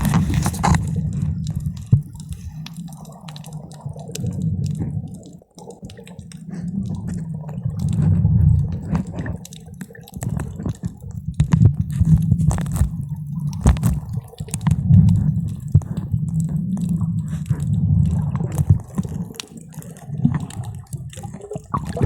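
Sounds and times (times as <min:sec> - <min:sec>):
bubbles clicking and popping: 0:00.0 - 0:22.0
underwater surging rumble: 0:00.0 - 0:22.0.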